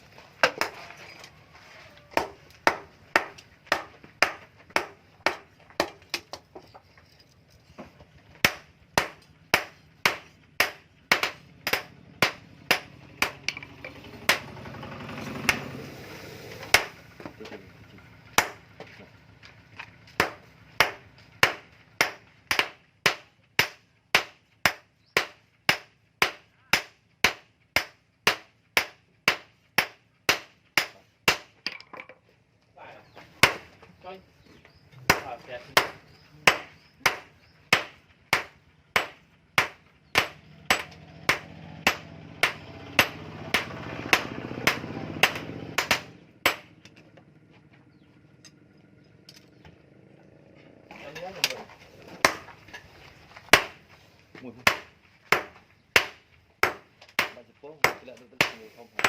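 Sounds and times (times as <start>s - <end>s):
hammer striking steel on anvil: 8.4s - 14.5s, 35.1s - 46.8s.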